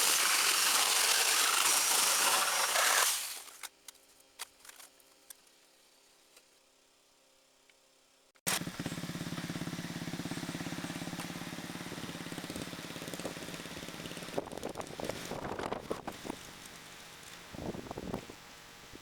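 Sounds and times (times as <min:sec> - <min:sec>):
small engine idling: 0:08.5 - 0:18.3.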